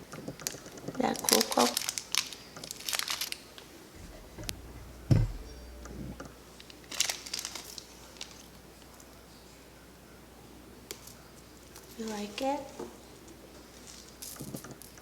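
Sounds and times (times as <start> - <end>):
packaging crinkling: 0.4 - 3.4
dull thump: 4.0 - 6.3.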